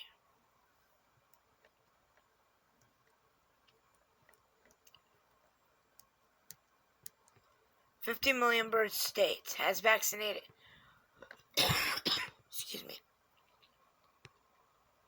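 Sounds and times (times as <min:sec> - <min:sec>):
faint clicks: 0:01.2 - 0:07.6.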